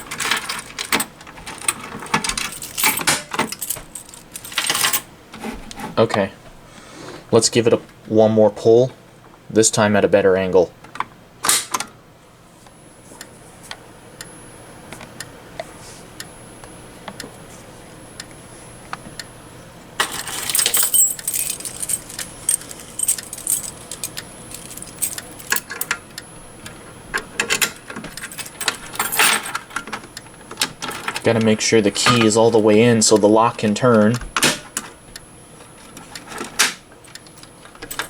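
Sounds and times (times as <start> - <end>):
key ring jangling: 0.0 - 5.1, 20.0 - 26.0, 27.5 - 29.7, 30.8 - 31.5, 37.0 - 38.0
faint regular ticking: 20.0 - 29.1.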